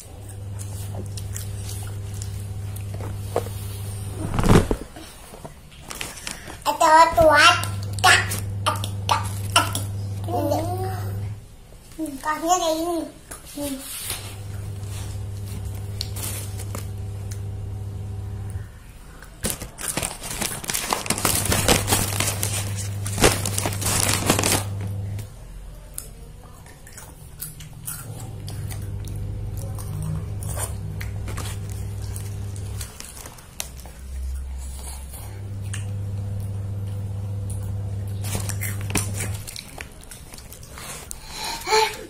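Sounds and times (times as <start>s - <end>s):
low steady hum: 0.0s - 6.6s, 7.2s - 12.2s, 14.1s - 42.0s
plastic snack packet crinkling: 4.2s - 6.8s, 15.4s - 17.0s, 19.1s - 25.3s, 28.3s - 35.6s, 38.2s - 41.5s.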